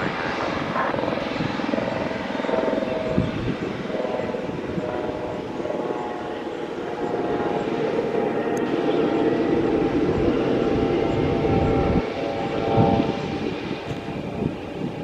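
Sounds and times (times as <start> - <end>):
jet engines running: 0.0 - 15.0.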